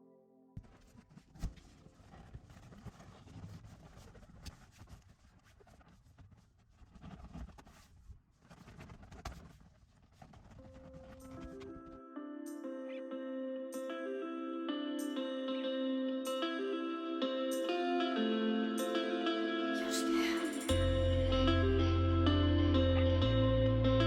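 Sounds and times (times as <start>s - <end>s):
low rustling noise: 0.6s - 12.0s
music: 11.0s - 24.0s.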